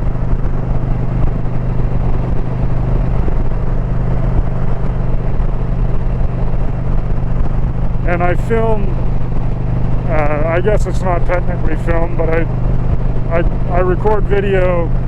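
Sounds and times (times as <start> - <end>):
motorcycle engine running: 0.0 - 15.0
wind and road noise: 0.0 - 15.0.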